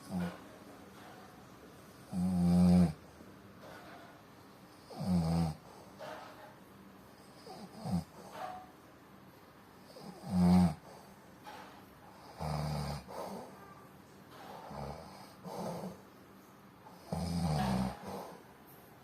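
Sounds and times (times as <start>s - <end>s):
person snoring: 2.1s - 3.0s, 9.9s - 10.9s, 17.0s - 18.4s.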